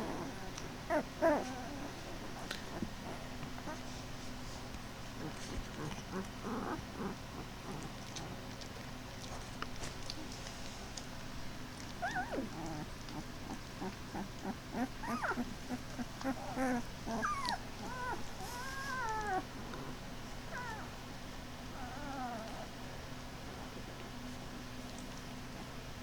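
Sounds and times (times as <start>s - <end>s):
puppies whimpering and squealing: 0.0s - 4.0s, 11.9s - 21.1s, 21.7s - 22.8s
steady low hum: 0.0s - 26.0s.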